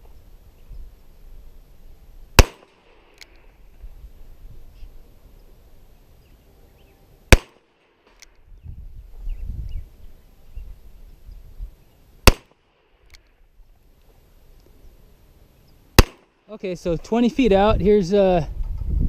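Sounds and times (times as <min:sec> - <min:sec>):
revolver shots: 0:16.0 - 0:16.3.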